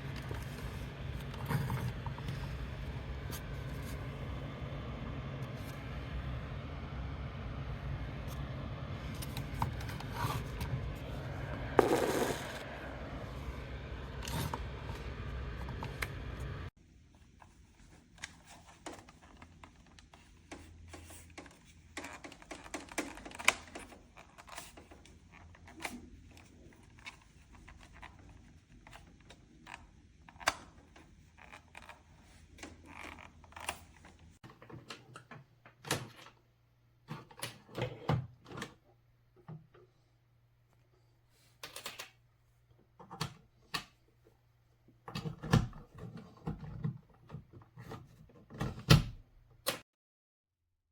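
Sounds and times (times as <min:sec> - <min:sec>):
steady low hum: 0:00.0 - 0:17.6
objects being handled: 0:11.8 - 0:12.6.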